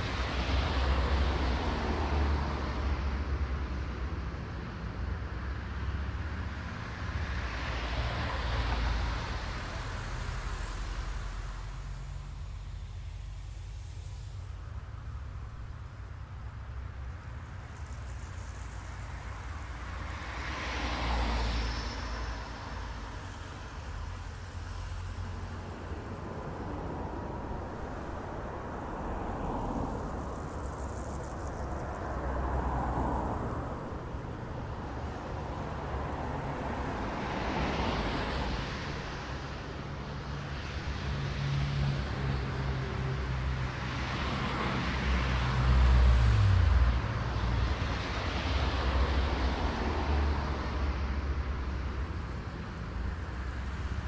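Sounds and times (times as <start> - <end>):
cars passing: 0.0 - 4.8, 5.4 - 54.0
low traffic rumble: 0.0 - 54.0.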